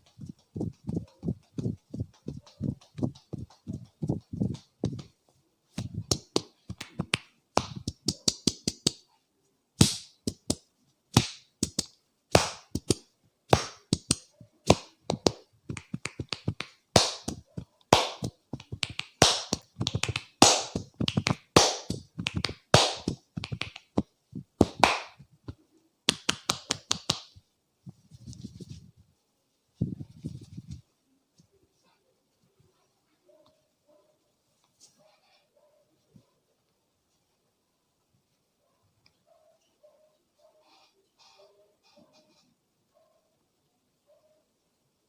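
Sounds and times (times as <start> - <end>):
hands slapping on head: 0.0 - 5.1, 5.8 - 9.1, 9.8 - 27.4.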